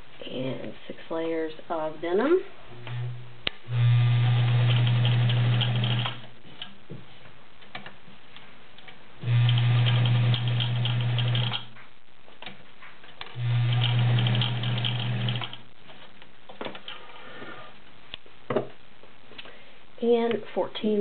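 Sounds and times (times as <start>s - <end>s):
sewing machine running: 3.7s - 6.2s, 9.2s - 11.7s, 13.3s - 15.6s.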